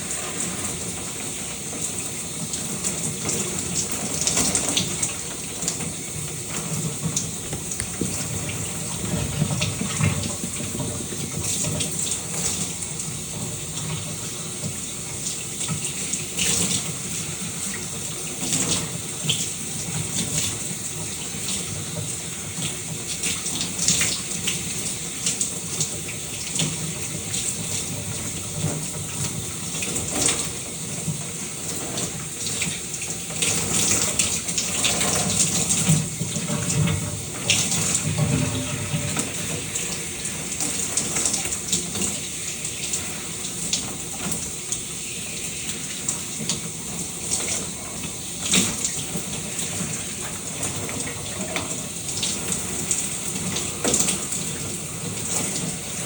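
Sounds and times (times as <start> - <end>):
shower water spraying: 0.0 - 56.0.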